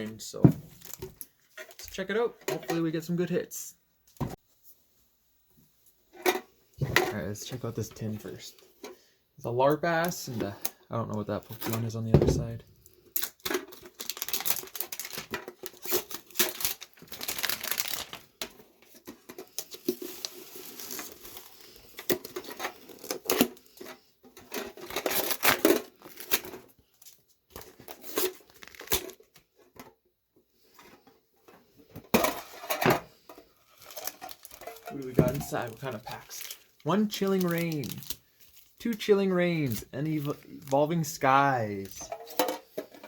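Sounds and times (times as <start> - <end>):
plastic wrapping crinkling: 12.8 - 18.4, 24.6 - 29.4, 33.6 - 43.0.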